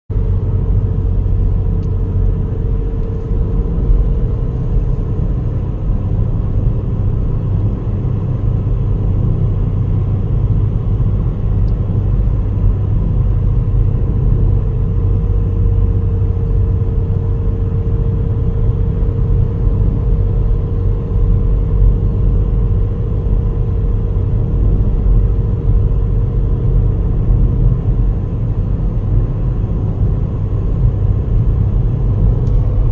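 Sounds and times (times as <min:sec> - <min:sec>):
car road noise rumble: 0:00.1 - 0:32.9.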